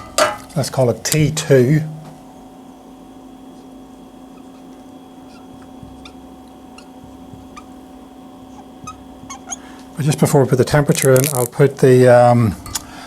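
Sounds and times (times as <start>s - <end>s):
steady electrical hum: 0.0s - 13.0s
marker pen squeaking on whiteboard: 4.3s - 9.8s.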